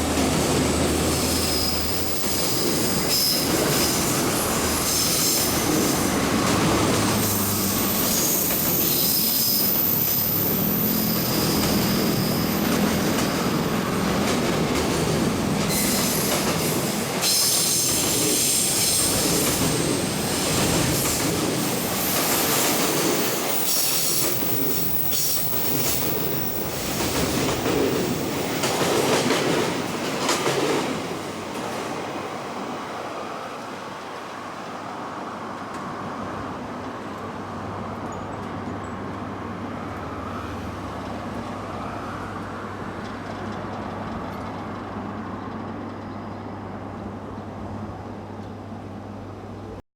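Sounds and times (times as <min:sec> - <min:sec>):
wheels squealing on rails: 0:00.0 - 0:30.1
clickety-clack over rail joints: 0:00.0 - 0:32.4, 0:35.5 - 0:36.0, 0:42.9 - 0:46.3.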